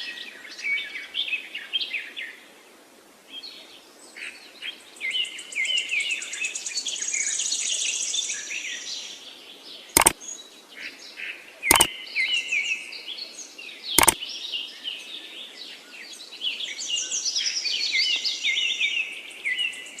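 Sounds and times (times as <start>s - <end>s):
sharp clicks: 10.0s - 10.2s, 14.0s - 14.2s.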